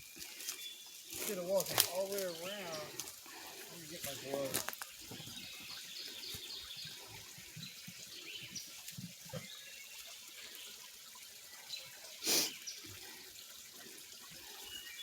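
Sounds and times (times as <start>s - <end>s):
creek water trickling: 0.0s - 15.0s.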